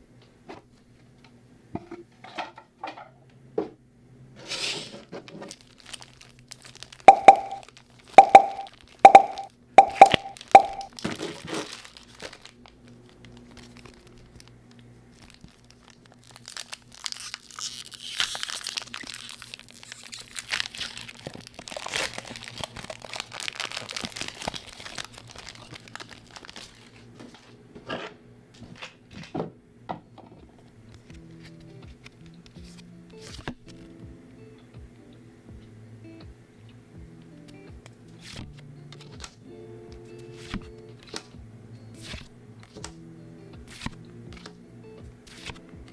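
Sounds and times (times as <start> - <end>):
foil wrapper crinkling: 5.3 - 8.1, 10.4 - 27.4.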